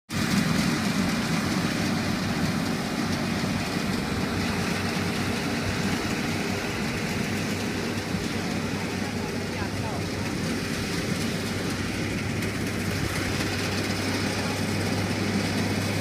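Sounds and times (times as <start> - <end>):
combine harvester running: 0.1 - 16.0.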